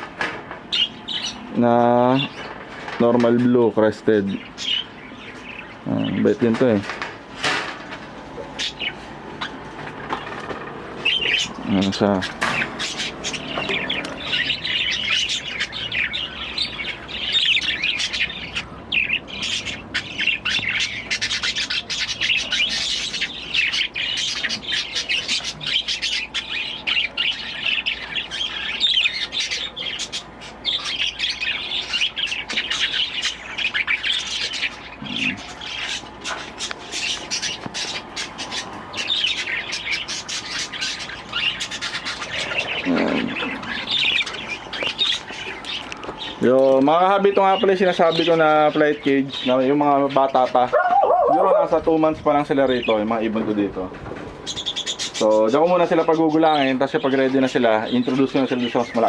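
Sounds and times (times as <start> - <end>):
budgerigars chirping: 0.7 - 7.0, 8.4 - 59.0
bird squawks: 8.5 - 10.4, 11.0 - 46.4.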